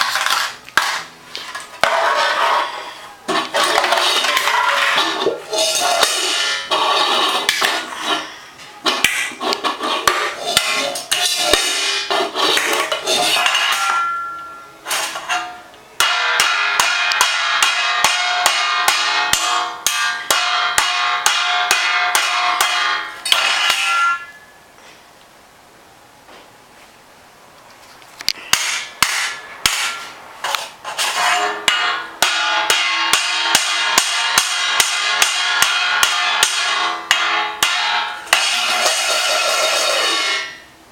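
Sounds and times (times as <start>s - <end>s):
metal pots clanging: 0.0s - 24.4s, 28.4s - 40.7s.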